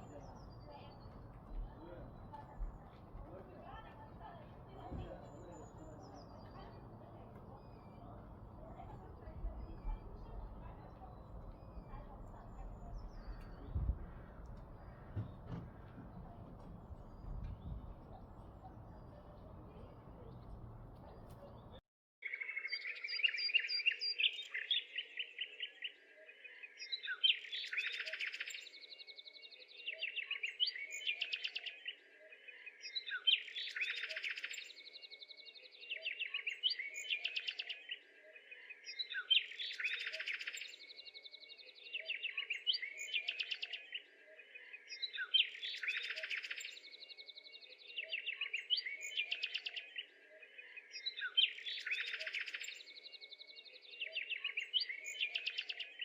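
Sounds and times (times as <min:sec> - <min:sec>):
birds chirping and trilling: 0:00.0 - 0:56.0.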